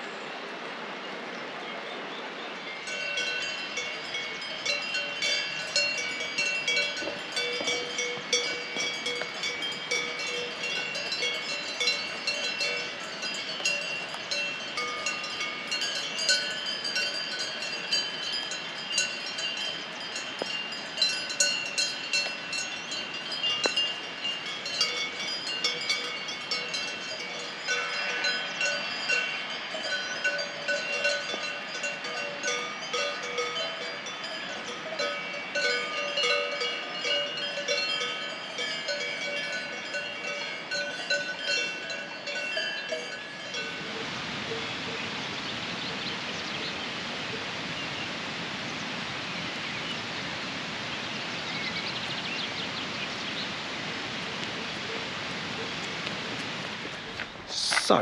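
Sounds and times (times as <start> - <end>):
cowbells clanking: 2.7 - 45.0.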